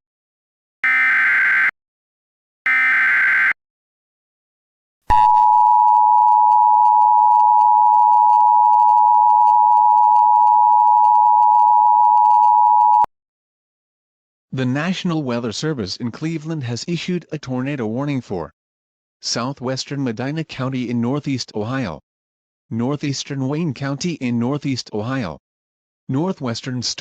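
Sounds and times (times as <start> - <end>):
two-tone attention signal: 2.7 - 3.6.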